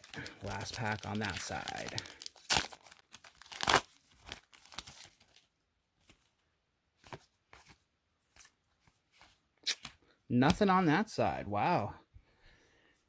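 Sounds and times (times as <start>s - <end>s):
wrapper crinkling: 0.0s - 5.5s
wrapper tearing: 0.0s - 5.5s.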